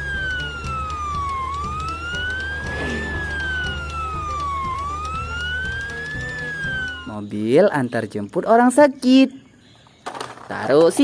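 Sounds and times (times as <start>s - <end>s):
siren wailing: 0.0s - 7.1s
background music with low beat: 0.0s - 7.3s.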